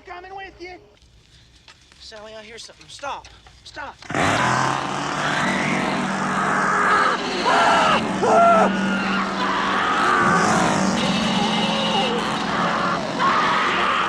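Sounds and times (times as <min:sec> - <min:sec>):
chainsaw revving: 0:04.0 - 0:14.0
woman screaming: 0:05.4 - 0:14.0.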